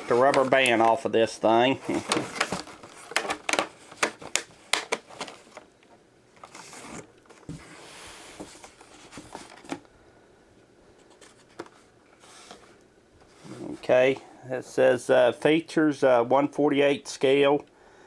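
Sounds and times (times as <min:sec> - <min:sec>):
cardboard and packing rustling: 0:00.0 - 0:09.9, 0:11.0 - 0:14.0.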